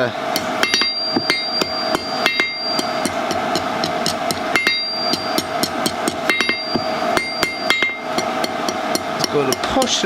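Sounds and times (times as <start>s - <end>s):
anvil ringing: 0.3s - 10.0s
hammer striking steel on anvil: 0.3s - 10.0s.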